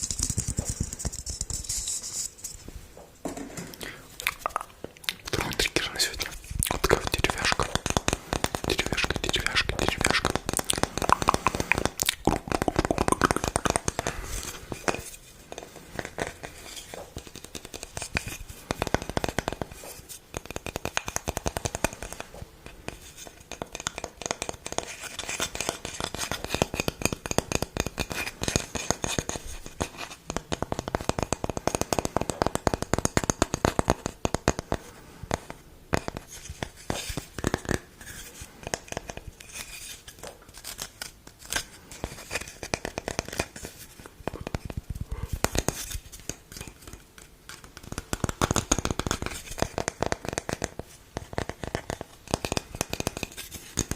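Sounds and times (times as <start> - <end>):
asmr crackling and scratching: 0.0 - 2.6, 5.2 - 20.1.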